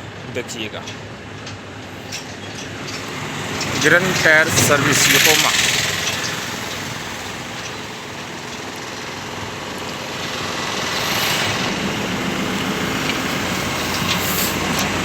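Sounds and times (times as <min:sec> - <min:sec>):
vehicle engine running: 0:01.1 - 0:15.0.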